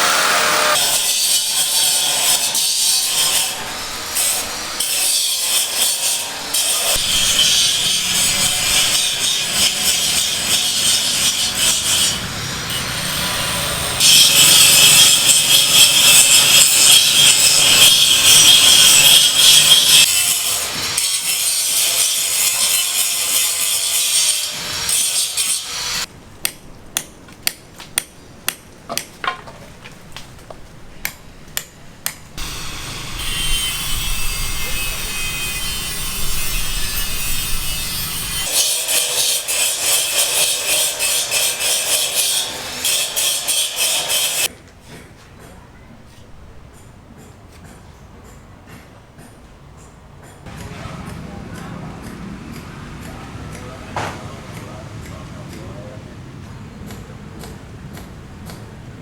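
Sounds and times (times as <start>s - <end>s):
loud rasping sawing: 0.0s - 26.1s, 32.4s - 44.5s.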